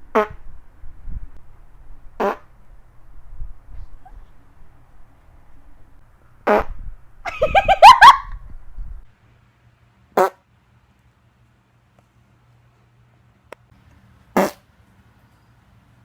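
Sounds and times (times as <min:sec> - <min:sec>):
farts: 0:00.1 - 0:00.4, 0:02.2 - 0:02.5, 0:06.4 - 0:06.8, 0:10.2 - 0:10.4, 0:14.4 - 0:14.6.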